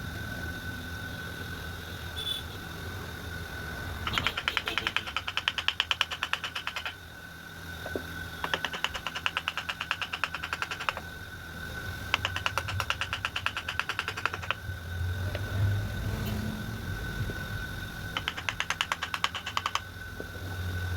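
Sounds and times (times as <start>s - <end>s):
tapping on wood-carving chisel: 4.1s - 7.0s, 7.9s - 11.1s, 12.1s - 14.6s, 18.2s - 19.8s
low hum: 11.1s - 18.2s.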